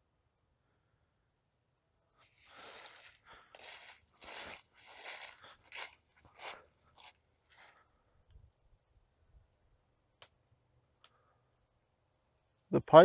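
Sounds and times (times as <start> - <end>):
branches crunching and scraping: 2.2 - 7.7.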